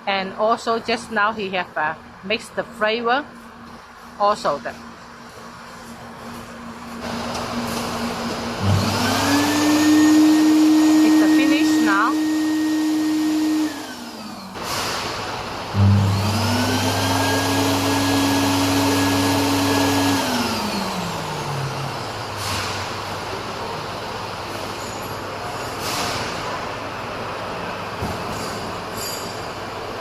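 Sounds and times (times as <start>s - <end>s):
popcorn machine motor whining: 7.0s - 22.6s.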